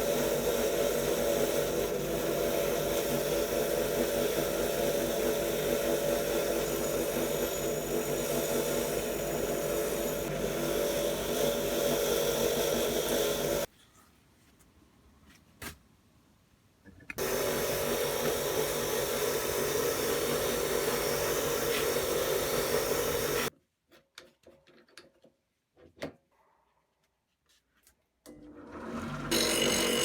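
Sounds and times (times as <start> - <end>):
electric power tool running: 0.0 - 13.7, 17.2 - 23.5, 28.6 - 30.0.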